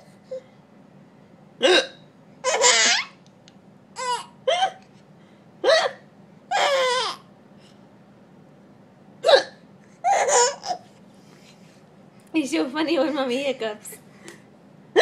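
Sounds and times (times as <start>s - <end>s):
woman hiccuping: 1.6s - 2.1s, 5.6s - 6.0s, 9.2s - 9.6s
baby laughing: 2.4s - 3.2s, 4.0s - 4.8s, 10.0s - 10.9s.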